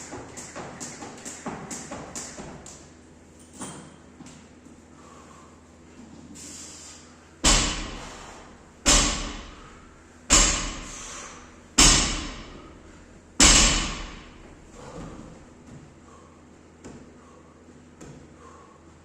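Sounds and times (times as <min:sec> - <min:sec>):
barbell hitting gym floor: 0:07.4 - 0:08.1, 0:08.8 - 0:09.7, 0:10.3 - 0:11.0, 0:11.8 - 0:12.7, 0:13.4 - 0:14.5.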